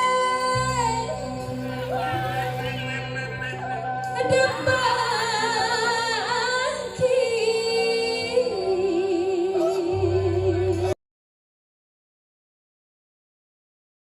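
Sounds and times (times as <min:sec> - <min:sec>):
high voice singing with vibrato: 0:00.0 - 0:11.0
low musical accompaniment: 0:00.0 - 0:11.0.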